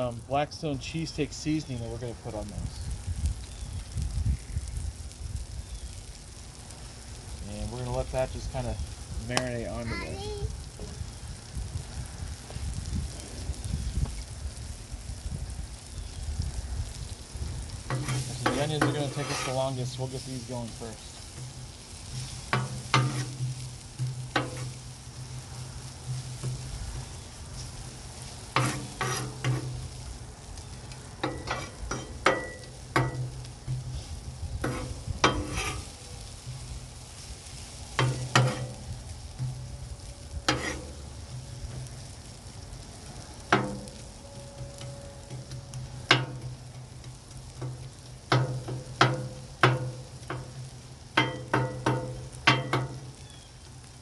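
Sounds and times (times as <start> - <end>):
onions sizzling on a griddle: 0.0 - 54.0
metal spatula scraping steel: 17.9 - 20.5, 22.1 - 24.8, 28.5 - 29.8, 31.2 - 36.0, 37.6 - 38.8, 40.4 - 41.0.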